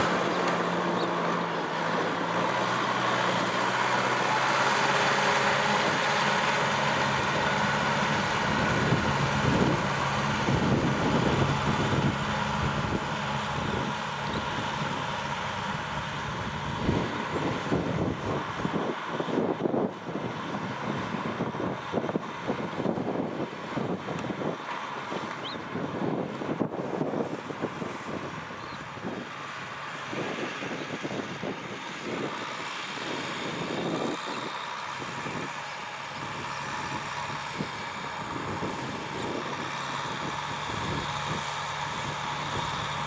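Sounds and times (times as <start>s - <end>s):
tractor diesel engine running: 0.0s - 43.0s.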